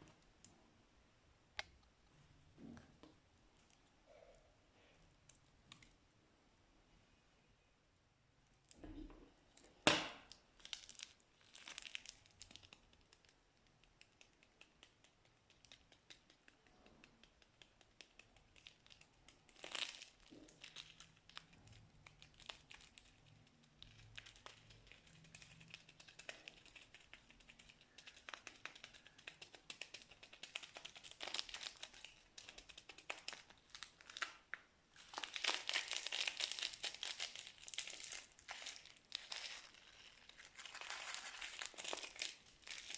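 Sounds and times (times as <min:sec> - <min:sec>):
small sharp clicks and crackles: 0:09.6 - 0:42.9
plastic bags crinkling: 0:30.0 - 0:42.9.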